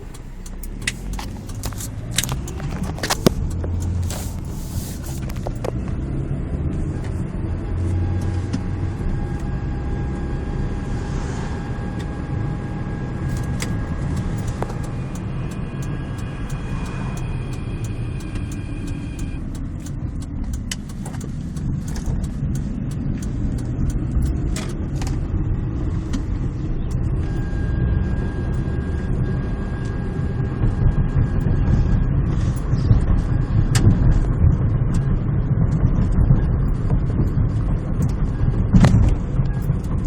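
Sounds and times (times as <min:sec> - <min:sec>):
sharp clicks and knocks: 0:00.0 - 0:05.9, 0:13.3 - 0:25.3
car engine rumbling: 0:00.0 - 0:40.0.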